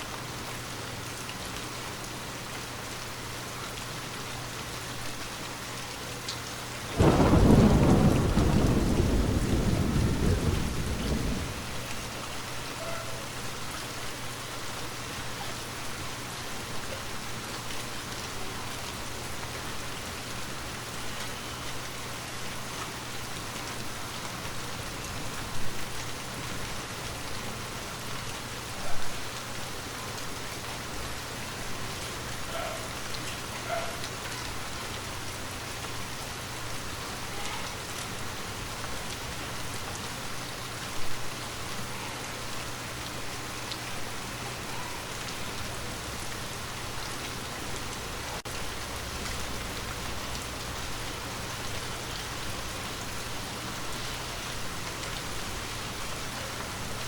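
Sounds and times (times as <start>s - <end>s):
rain pattering on a surface: 0.0s - 57.0s.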